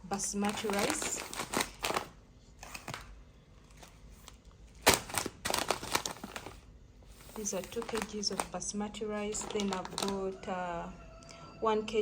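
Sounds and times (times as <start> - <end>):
plastic packaging rustling: 0.1 - 10.3.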